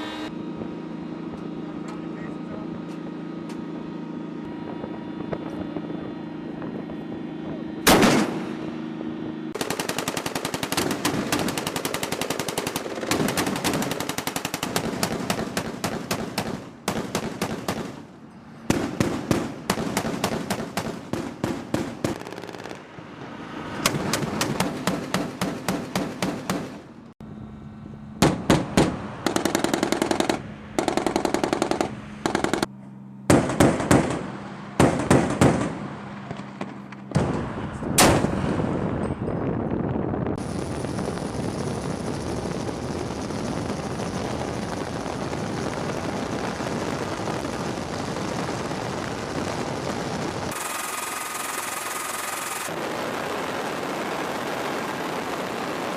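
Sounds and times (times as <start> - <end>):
vehicle engine running: 0.0 - 15.9.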